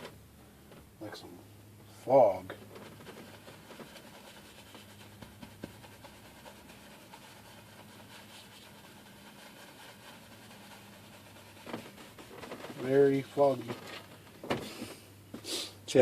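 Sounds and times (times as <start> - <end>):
low electrical hum: 0.0 - 16.0
paintbrush scrubbing on canvas: 2.6 - 14.2.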